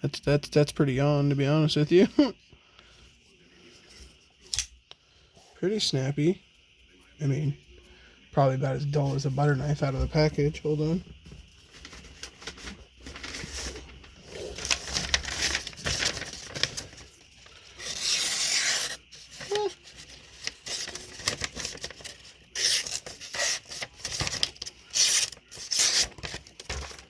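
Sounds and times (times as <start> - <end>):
knife slicing through paper: 17.8 - 19.8.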